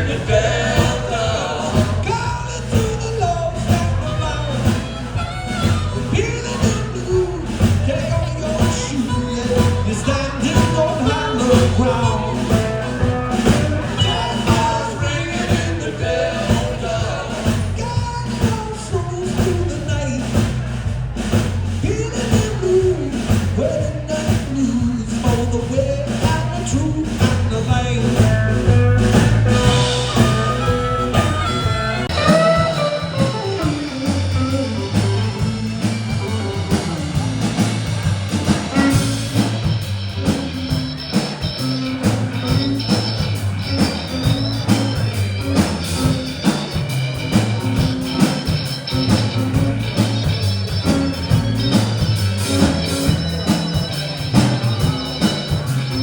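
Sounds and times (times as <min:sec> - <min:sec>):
bass: 0:00.0 - 0:56.0
drum kit beat: 0:00.0 - 0:56.0
electric guitar: 0:27.1 - 0:56.0.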